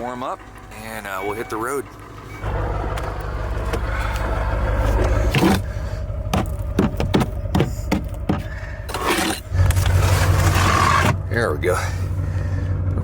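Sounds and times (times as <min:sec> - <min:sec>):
diesel engine idling: 0:00.0 - 0:13.0
sharp knocks: 0:06.3 - 0:08.5.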